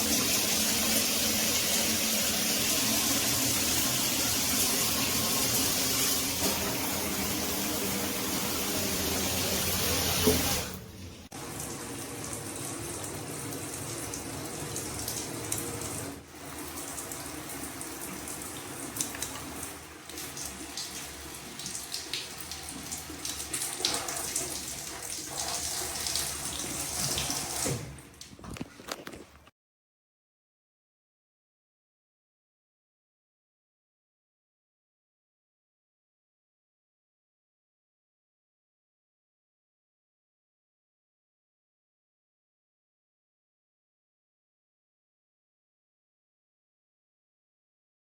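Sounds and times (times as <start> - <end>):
shower spray running: 0.0 - 27.9.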